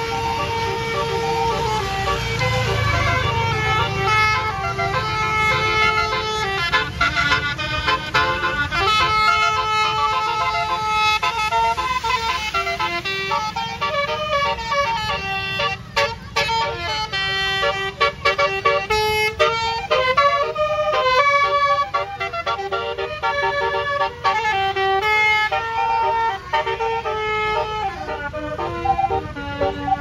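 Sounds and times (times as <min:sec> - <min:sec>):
musical air horn playing a tune: 0:00.0 - 0:30.0.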